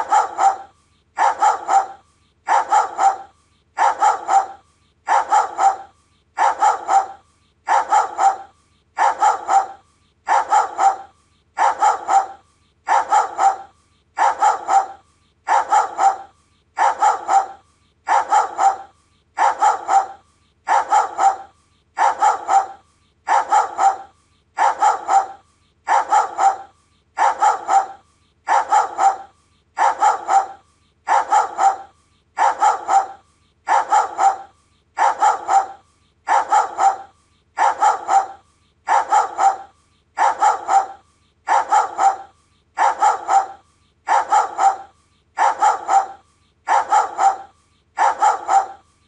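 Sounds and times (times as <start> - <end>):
dog barking in double barks: 0.0 - 48.9.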